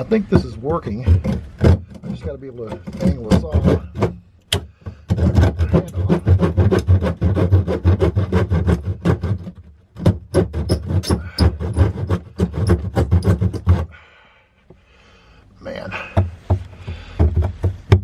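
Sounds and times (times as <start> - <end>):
saw rasping through plastic pipe: 0.0 - 14.0.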